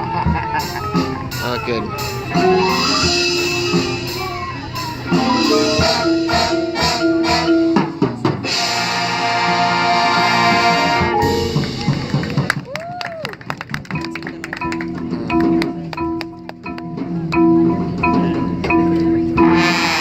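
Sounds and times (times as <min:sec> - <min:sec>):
drumline hits: 0:00.0 - 0:20.0
marching band playing: 0:00.0 - 0:20.0
full band chord held: 0:00.9 - 0:12.2.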